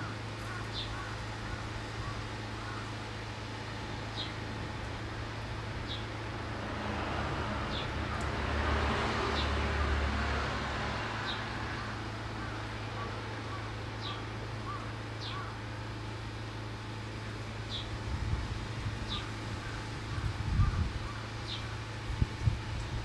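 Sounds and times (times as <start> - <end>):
vehicle passing by: 6.2 - 13.2.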